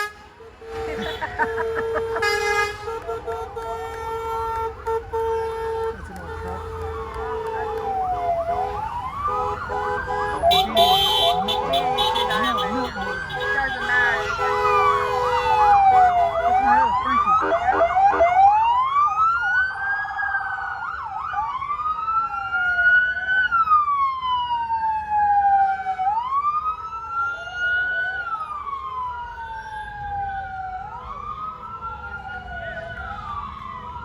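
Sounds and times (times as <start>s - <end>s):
emergency vehicle sirens wailing: 0.0s - 34.0s
siren blare: 0.0s - 34.0s.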